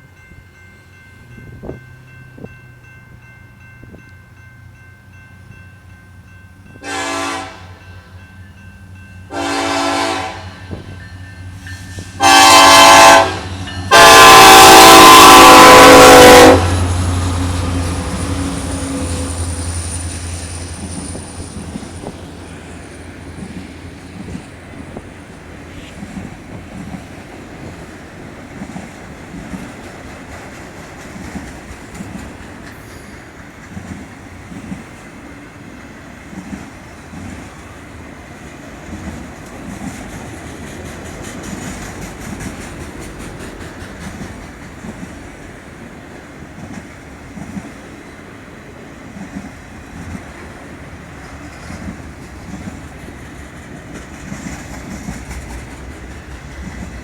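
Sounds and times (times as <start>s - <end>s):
train engine rumble: 0.0s - 57.0s
train wheels rolling on rails: 0.0s - 57.0s
locomotive horn blasts: 6.8s - 7.8s, 9.3s - 10.9s, 12.0s - 19.5s.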